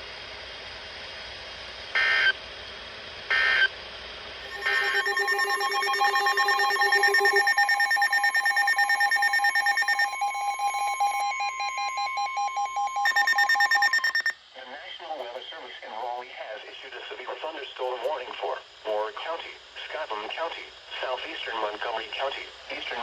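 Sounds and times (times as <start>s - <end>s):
harsh data bursts: 4.4s - 14.3s
steady electronic tone: 4.4s - 14.3s
rapid electronic alarm beeping: 4.4s - 14.4s.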